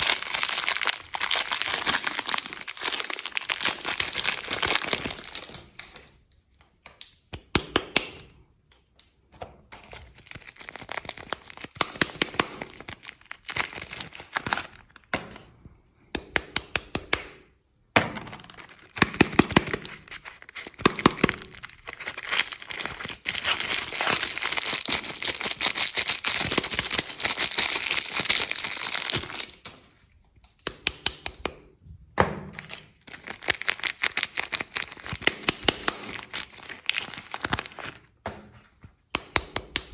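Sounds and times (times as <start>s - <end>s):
soap wrappers crinkling and tearing: 0.0s - 7.2s, 9.7s - 15.1s, 18.2s - 30.6s, 32.5s - 39.1s.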